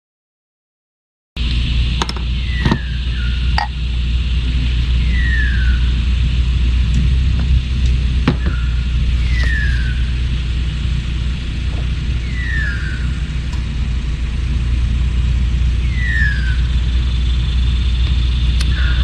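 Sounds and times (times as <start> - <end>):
thin steady trill: 1.4 - 6.9
low rumble: 1.4 - 19.0
falling whistle bird call: 2.3 - 3.8, 4.9 - 6.1, 8.4 - 14.6, 15.8 - 19.0.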